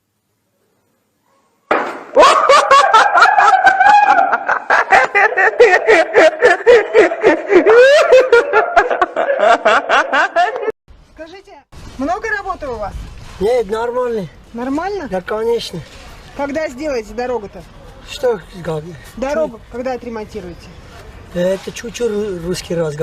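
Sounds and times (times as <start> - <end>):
loud laughter in rapid pulses: 2.2 - 10.7.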